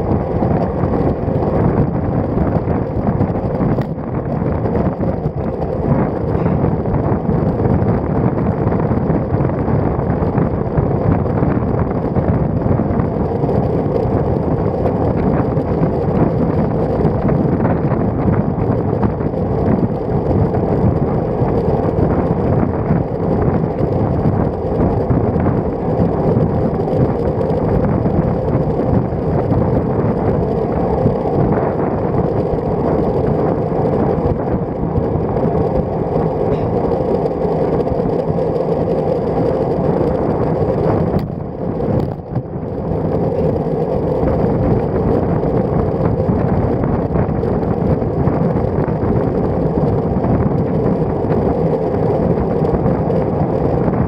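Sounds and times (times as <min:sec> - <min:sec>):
road noise: 0:00.0 - 0:54.0
rushing wind: 0:00.0 - 0:54.0.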